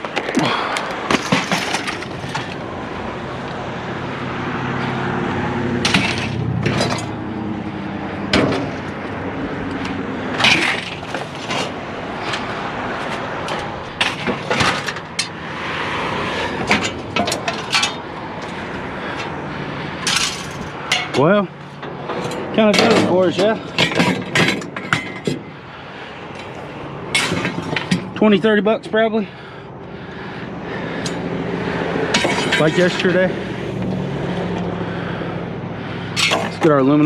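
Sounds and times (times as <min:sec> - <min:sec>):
knocks and clatters: 0:00.0 - 0:02.6, 0:05.8 - 0:07.2, 0:08.3 - 0:09.1, 0:09.7 - 0:15.4, 0:16.4 - 0:19.3, 0:20.0 - 0:25.5, 0:26.4 - 0:28.2, 0:32.1 - 0:33.0.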